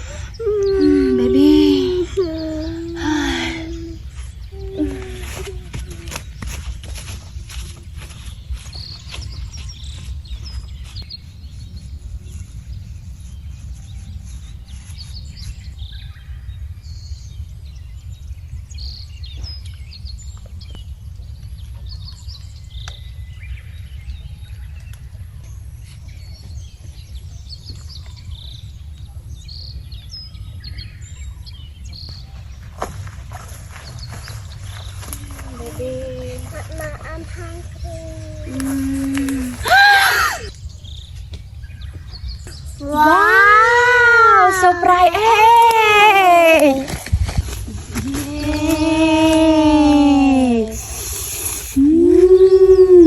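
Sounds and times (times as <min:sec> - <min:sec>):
steady low rumble: 0:00.0 - 0:39.7.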